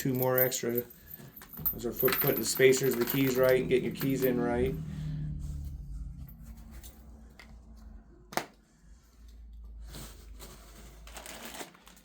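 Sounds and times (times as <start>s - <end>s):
packaging rustling and scraping: 9.2s - 12.0s.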